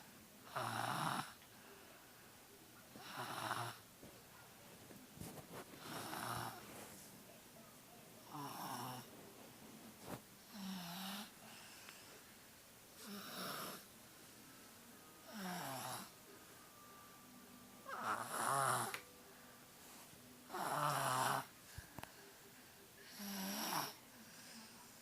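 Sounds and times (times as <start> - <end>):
person snoring: 15.3 - 16.1, 17.9 - 19.0, 20.5 - 21.5, 23.0 - 24.7.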